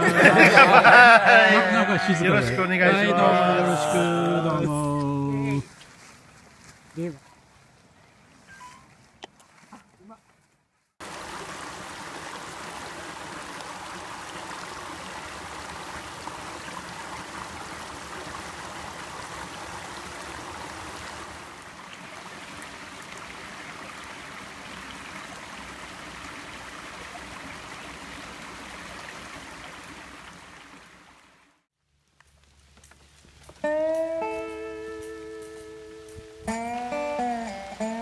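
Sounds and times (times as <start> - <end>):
stream water rushing: 0.0 - 2.8, 11.0 - 31.5.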